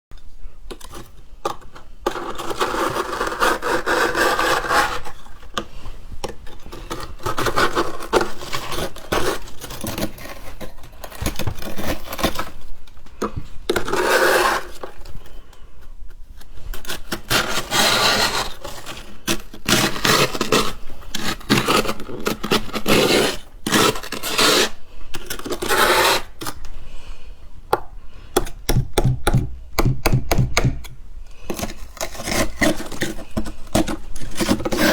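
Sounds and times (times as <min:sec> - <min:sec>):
frost being scraped: 0:02.1 - 0:05.4, 0:13.7 - 0:15.2, 0:16.8 - 0:26.6, 0:31.4 - 0:34.9.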